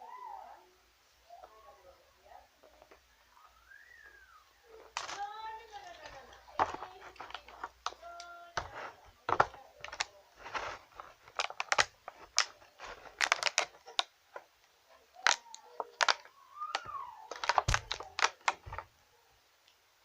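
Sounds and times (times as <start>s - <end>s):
packaging clicks and crinkles: 4.7s - 18.9s.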